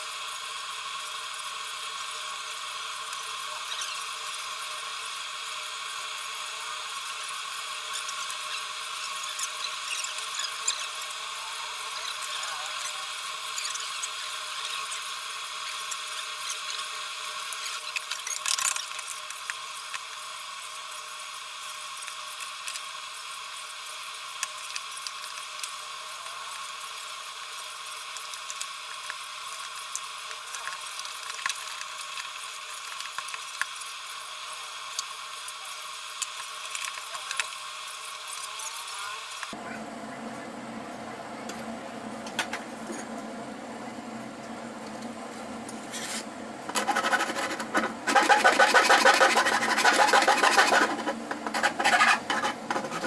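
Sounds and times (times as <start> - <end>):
rotary tool whining: 45.8 - 53.0
gritty grinding burst: 45.9 - 53.0.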